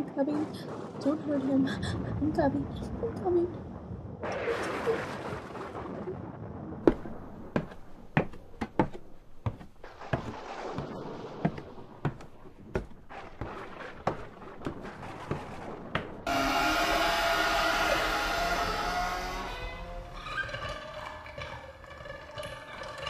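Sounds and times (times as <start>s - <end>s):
footsteps on hard floor: 6.9s - 16.2s.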